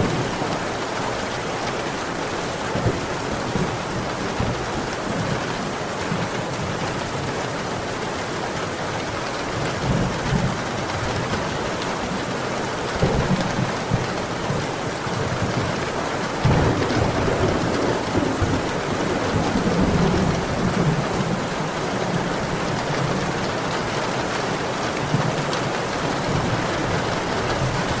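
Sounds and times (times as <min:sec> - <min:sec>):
low thunder rumbling: 0:00.0 - 0:00.8, 0:16.4 - 0:23.4
heavy rain falling: 0:00.0 - 0:28.0.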